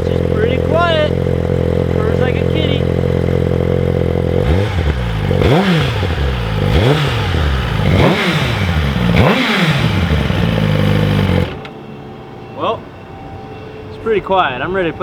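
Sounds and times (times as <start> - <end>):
motorcycle engine revving: 0.0 - 11.7.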